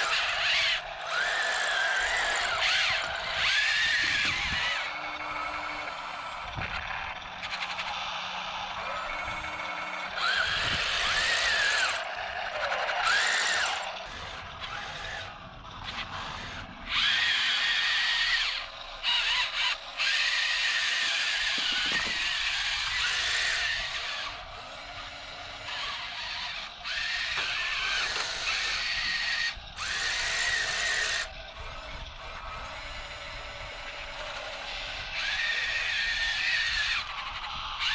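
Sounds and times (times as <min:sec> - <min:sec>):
toy tank electric motors whining: 0:00.0 - 0:37.9.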